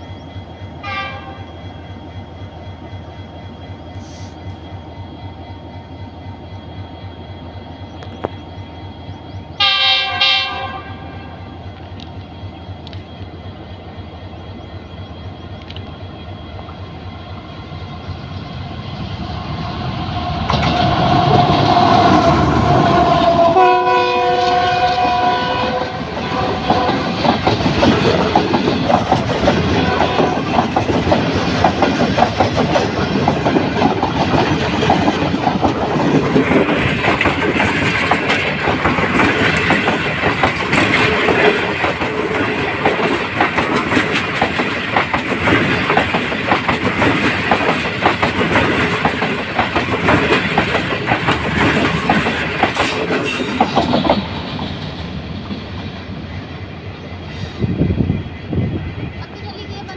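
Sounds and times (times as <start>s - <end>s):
train rumble: 0.0s - 59.9s
train wheels clattering on rails: 0.0s - 59.9s
train horn: 0.8s - 1.5s, 9.6s - 11.5s, 21.4s - 27.2s, 29.7s - 30.5s.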